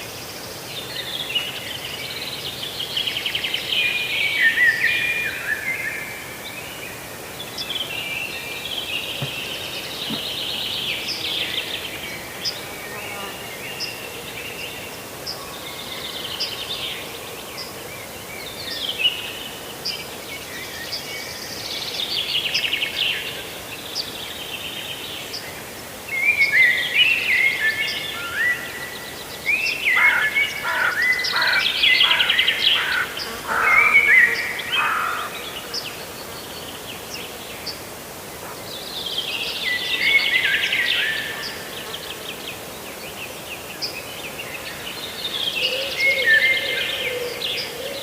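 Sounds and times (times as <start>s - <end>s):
steady background hiss: 0.0s - 48.0s
small birds chirping: 7.4s - 14.0s.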